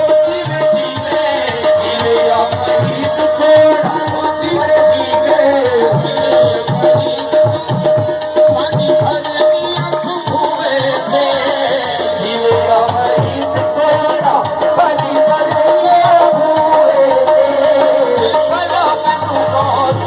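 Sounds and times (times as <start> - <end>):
hand drum rhythm: 0.0 - 20.0.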